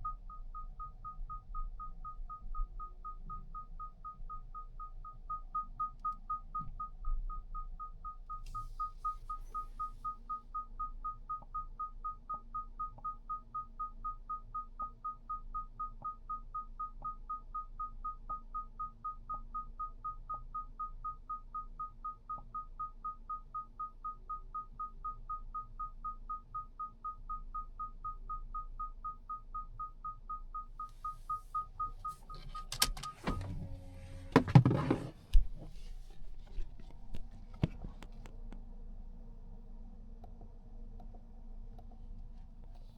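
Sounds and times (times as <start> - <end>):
car warning chime beeping: 0.0 - 37.8
rustling handling noise: 31.2 - 38.3.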